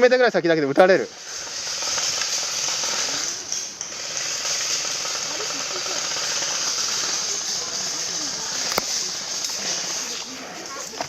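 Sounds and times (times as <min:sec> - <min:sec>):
high-pitched outdoor hiss: 0:00.0 - 0:11.0
faint distant voices: 0:02.6 - 0:11.0.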